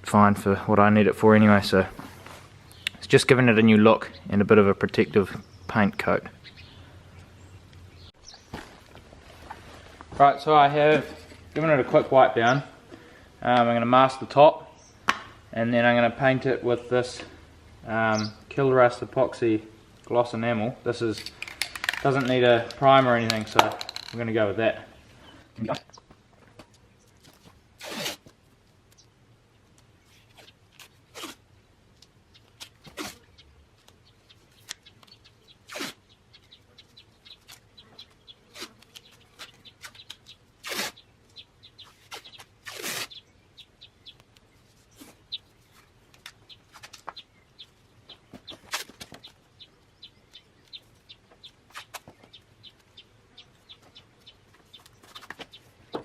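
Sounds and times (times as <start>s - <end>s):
masking tape ripping: 27.8s - 28.4s, 30.3s - 31.4s, 32.6s - 33.3s, 35.6s - 36.1s, 38.5s - 41.1s, 41.9s - 43.2s, 48.6s - 49.2s, 51.7s - 52.1s
handling ticks: 43.1s - 44.6s, 45.3s - 55.7s.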